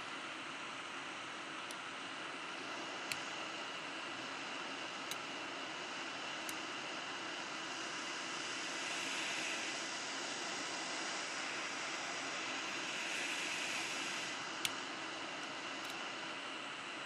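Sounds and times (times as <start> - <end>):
hot air blower hissing: 2.0 - 17.0.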